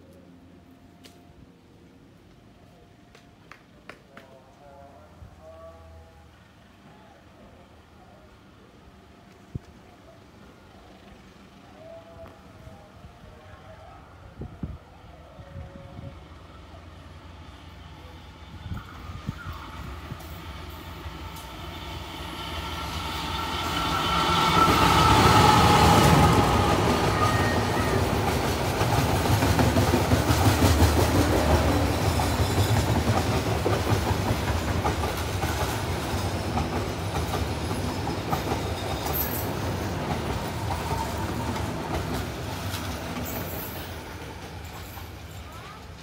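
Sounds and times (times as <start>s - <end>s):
train wheels clattering past: 20.2s - 46.0s.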